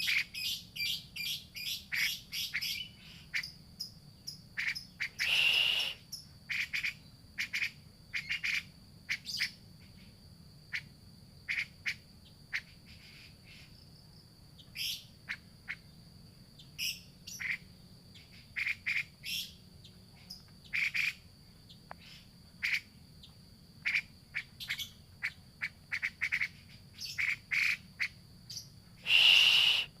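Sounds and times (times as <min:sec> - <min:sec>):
bird chirping calls: 0:00.0 - 0:09.6, 0:16.6 - 0:30.0
harsh bird call: 0:04.6 - 0:06.0, 0:29.0 - 0:30.0.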